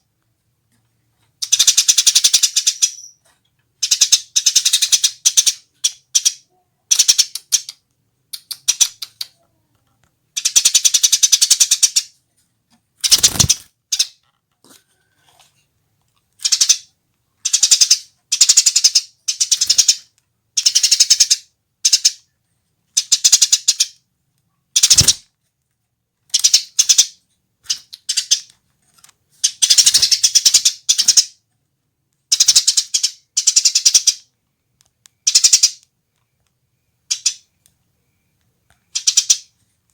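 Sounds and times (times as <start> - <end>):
sparrow chattering chirps: 1.4 - 3.2, 3.8 - 7.7, 10.4 - 12.1, 13.0 - 14.2, 16.4 - 22.2, 23.0 - 24.0, 24.8 - 25.2, 26.3 - 28.5, 29.4 - 31.4, 32.3 - 34.3, 35.2 - 35.8, 37.1 - 37.5, 38.9 - 39.5.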